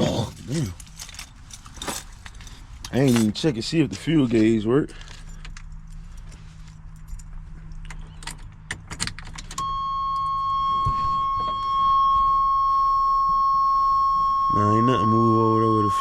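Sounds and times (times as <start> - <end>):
keys jangling in ignition: 0.0 - 9.6
high-pitched warning buzzer: 9.6 - 16.0.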